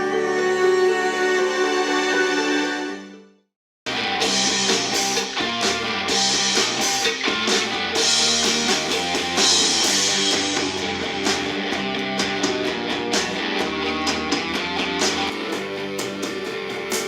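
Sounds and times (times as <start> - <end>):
rock song through small speaker: 3.9 - 17.0.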